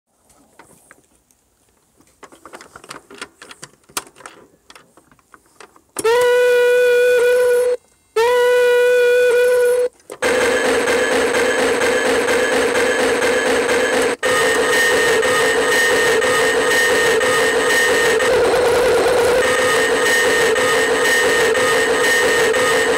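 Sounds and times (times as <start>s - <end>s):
electronic horn-like tones: 6.0s - 22.9s
buzzy pulsing electronic tone: 6.1s - 22.9s.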